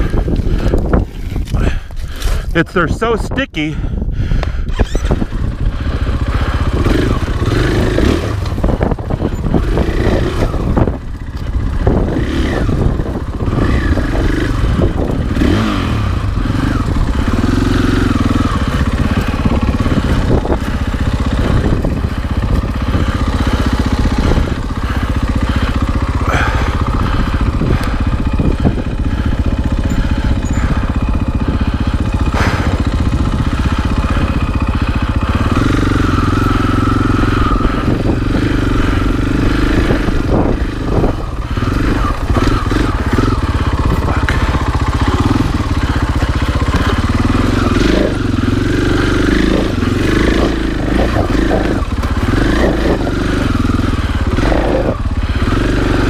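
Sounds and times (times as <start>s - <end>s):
knocks and clatter over rough ground: 0.0s - 3.3s, 4.4s - 56.0s
dirt bike engine revving: 4.7s - 56.0s.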